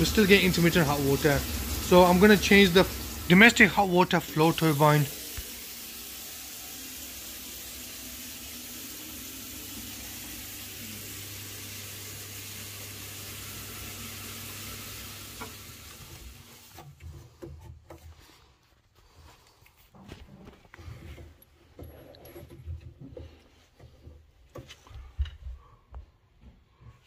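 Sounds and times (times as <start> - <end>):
running water hiss: 0.0 - 16.8.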